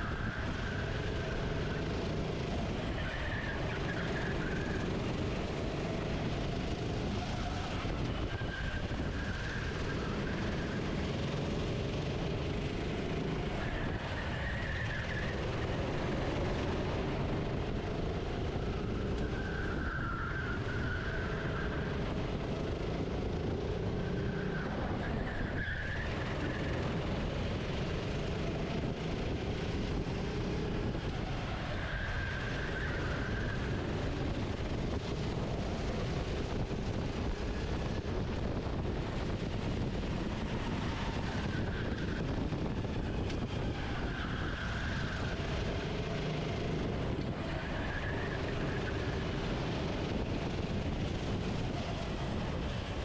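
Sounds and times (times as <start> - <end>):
kart engine revving: 0.0 - 53.0
wind rush: 24.6 - 53.0.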